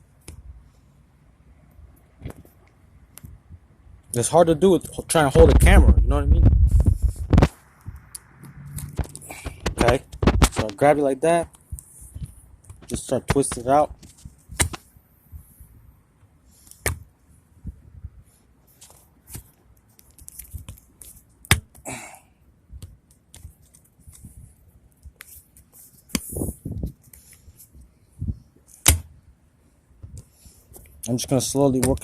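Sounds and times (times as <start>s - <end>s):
sharp clicks and knocks: 12.2s - 14.9s.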